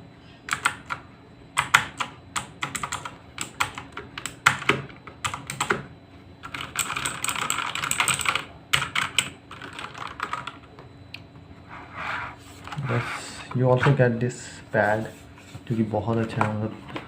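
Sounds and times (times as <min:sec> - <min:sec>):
mechanical keyboard typing: 0:00.5 - 0:01.0, 0:01.6 - 0:05.8, 0:06.4 - 0:10.6.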